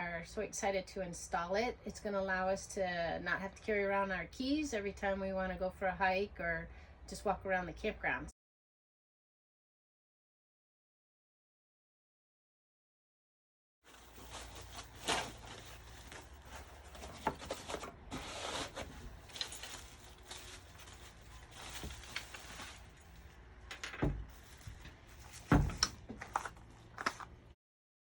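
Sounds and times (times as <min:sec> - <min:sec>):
handling clicks and rustling: 0:14.0 - 0:27.5
loud thumps: 0:25.4 - 0:26.1.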